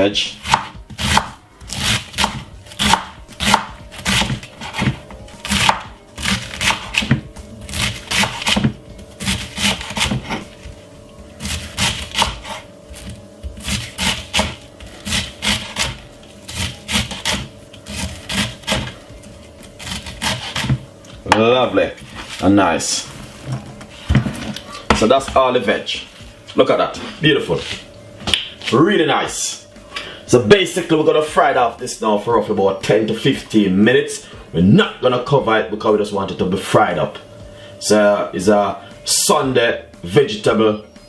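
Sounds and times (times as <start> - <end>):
knife chopping on cutting board: 0.4 - 10.5, 11.4 - 19.0, 19.8 - 22.2.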